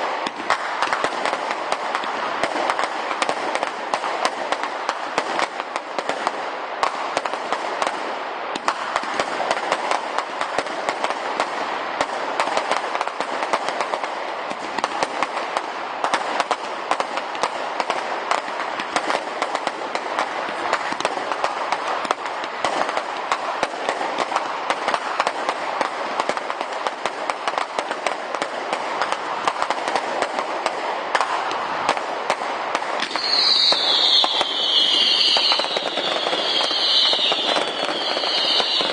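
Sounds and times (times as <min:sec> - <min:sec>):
fireworks crackling and popping: 0:00.0 - 0:38.9
high falling whistle: 0:33.1 - 0:38.9.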